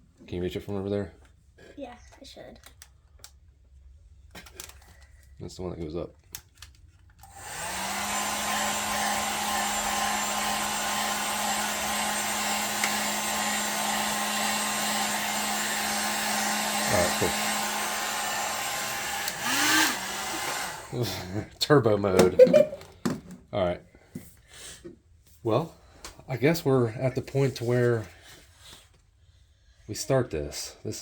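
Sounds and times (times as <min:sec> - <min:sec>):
hair dryer running: 0:07.2 - 0:21.2.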